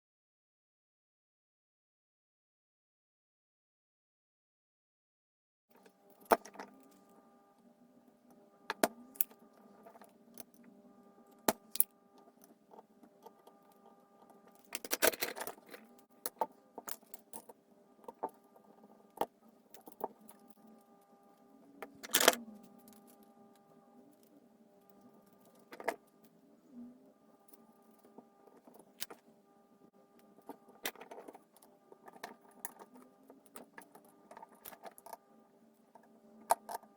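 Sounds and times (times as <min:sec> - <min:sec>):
steady low hum: 0:05.7 - 0:36.9.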